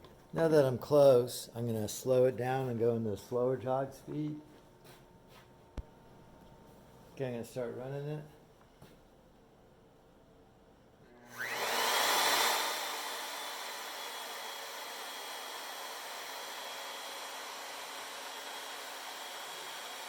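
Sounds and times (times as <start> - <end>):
router spindle whine: 11.1 - 20.0.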